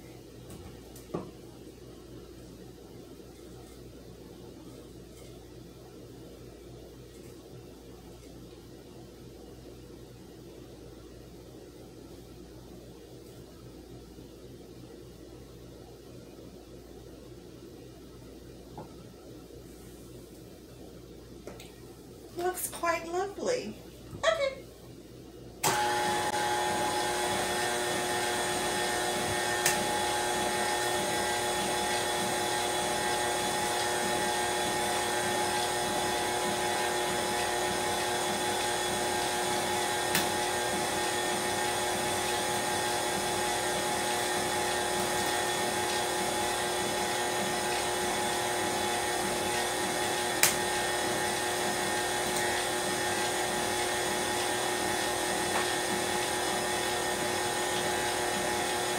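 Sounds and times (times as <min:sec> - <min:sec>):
stand mixer running: 0:25.6 - 0:58.9.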